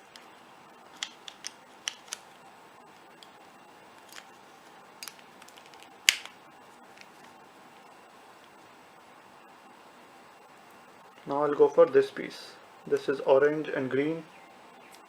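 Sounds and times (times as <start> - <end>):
plastic puzzle cube clicking: 0.9 - 2.2, 5.0 - 6.4
plastic piece snapping into place: 5.0 - 6.4.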